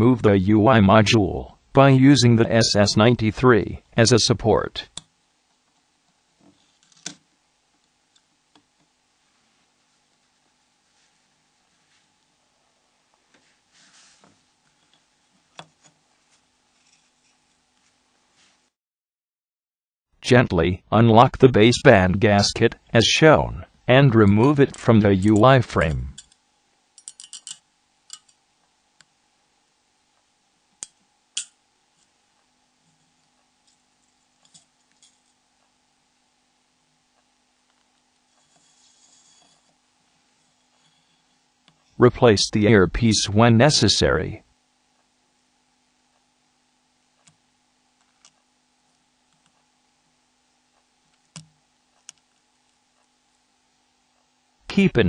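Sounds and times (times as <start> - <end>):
clicks of small tools and parts: 27.0 - 28.4.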